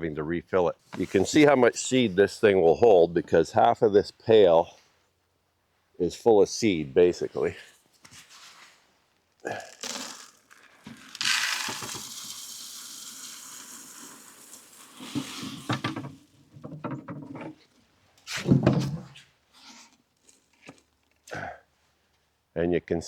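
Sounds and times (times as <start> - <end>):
bird seed pouring into feeder: 9.6 - 15.8
knocks and rattles: 15.2 - 17.7.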